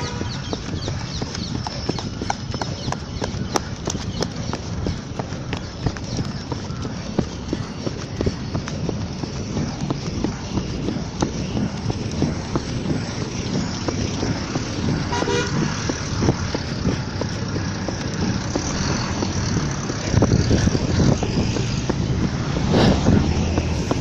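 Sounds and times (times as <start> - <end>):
vehicle horn toot: 0.0 - 0.4, 15.1 - 15.7
road traffic noise: 0.0 - 24.0.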